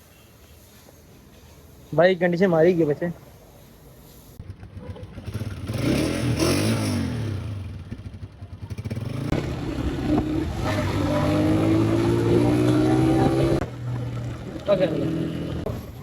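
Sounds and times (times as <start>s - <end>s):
motorcycle engine revving: 4.4s - 15.8s.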